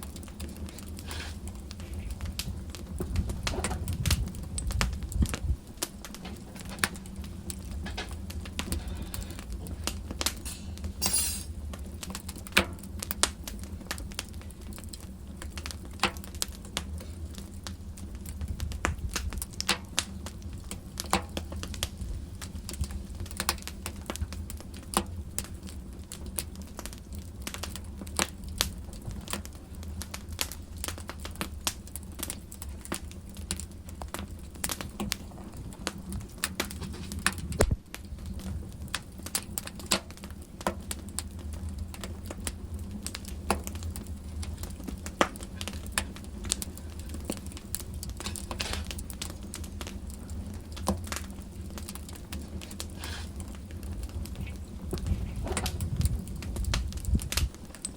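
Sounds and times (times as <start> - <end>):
low steady rumble: 0.0 - 27.2, 40.5 - 57.6
fire crackling and popping: 0.0 - 57.9.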